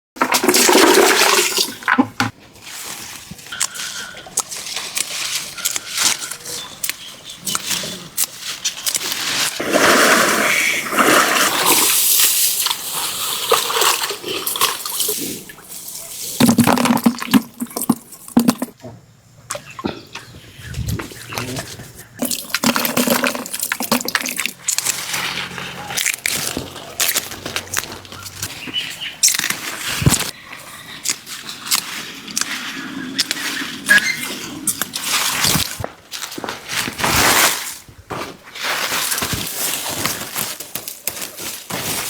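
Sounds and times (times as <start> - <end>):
water pouring and splashing: 0.2 - 5.4, 8.8 - 18.8, 22.2 - 27.8.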